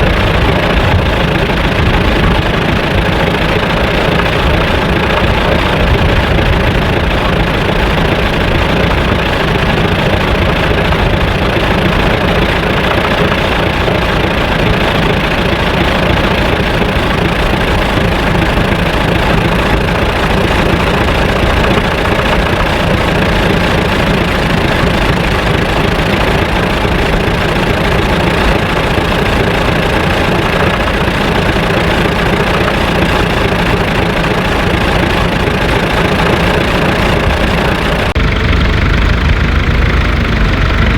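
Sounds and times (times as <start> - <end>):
engine idling: 0.0 - 40.9.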